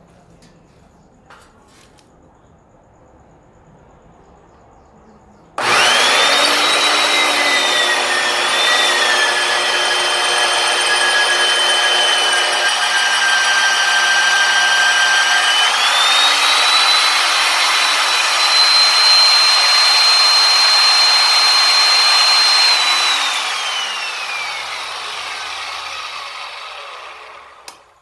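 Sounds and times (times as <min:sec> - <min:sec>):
drill motor whining: 0:05.6 - 0:28.0.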